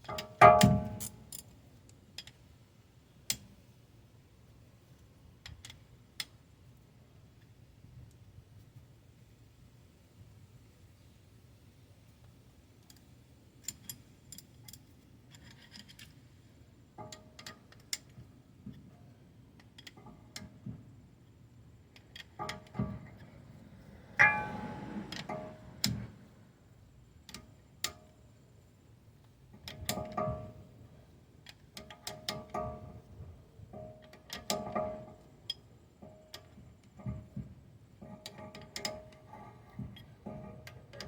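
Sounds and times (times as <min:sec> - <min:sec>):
hand tools clinking against metal: 0:24.2 - 0:25.6.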